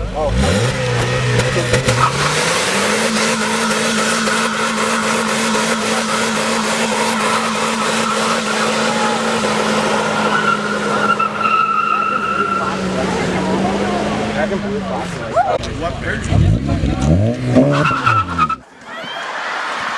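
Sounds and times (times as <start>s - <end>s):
car engine revving: 0.0s - 18.7s
tyres squealing: 1.7s - 13.8s, 17.4s - 18.7s.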